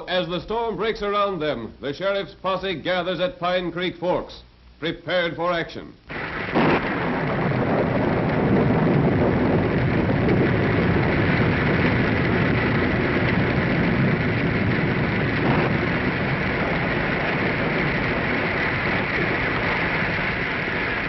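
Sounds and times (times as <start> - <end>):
rain and wind rushing: 6.0 - 21.0.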